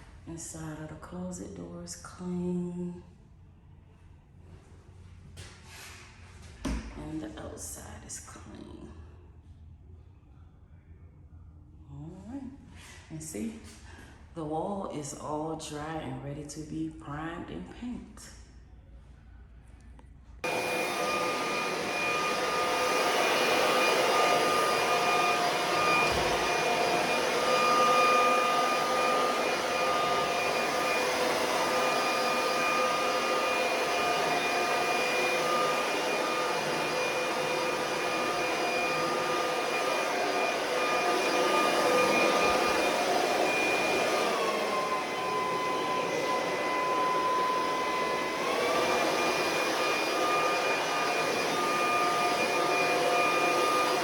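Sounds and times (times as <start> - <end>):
vacuum cleaner whining drone: 20.4 - 54.0.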